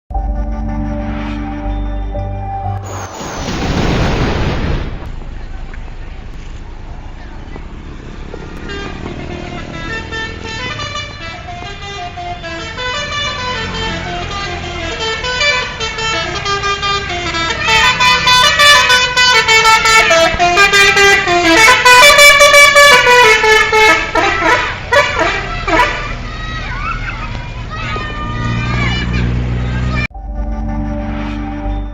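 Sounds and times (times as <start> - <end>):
multi-tone musical bus horn: 8.5 - 26.4, 28.5 - 31.9.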